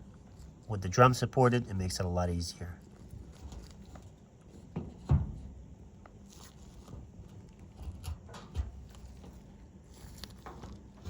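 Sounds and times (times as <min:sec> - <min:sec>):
dryer panel thumping and knocking: 0:04.8 - 0:05.4.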